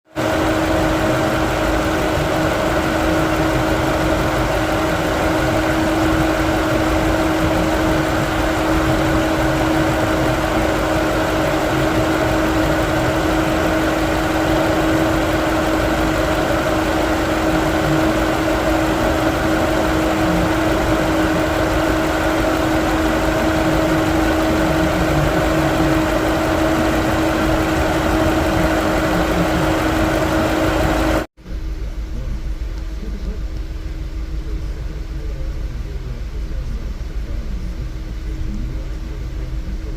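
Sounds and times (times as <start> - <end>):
constant whine: 0.1 - 39.9
car engine idling with misfire: 0.2 - 31.3.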